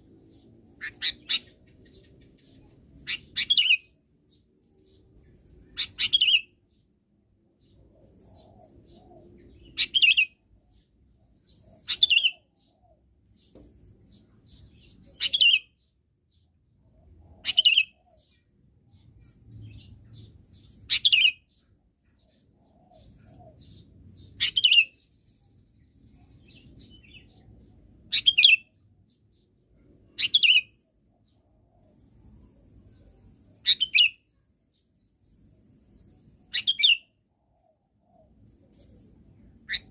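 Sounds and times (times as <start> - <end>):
bird calling: 39.7 - 39.9.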